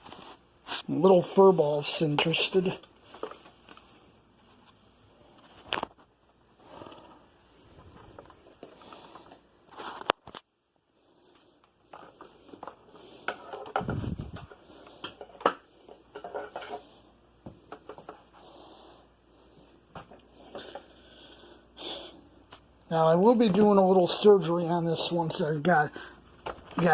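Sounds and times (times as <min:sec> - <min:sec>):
equipment and cables being moved: 0:02.3 - 0:06.1, 0:06.7 - 0:10.5, 0:11.8 - 0:18.4.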